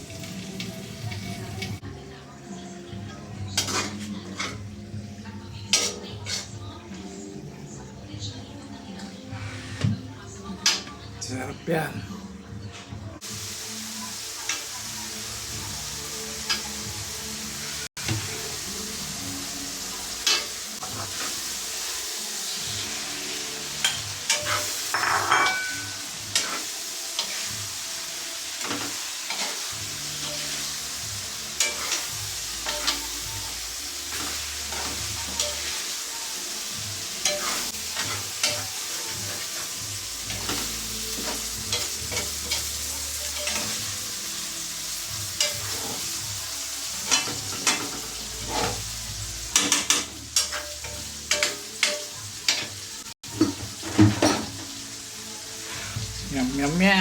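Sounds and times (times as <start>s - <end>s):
food sizzling in a frying pan: 0.0s - 57.0s
utensil scraping a pan: 37.2s - 39.6s, 47.0s - 52.6s.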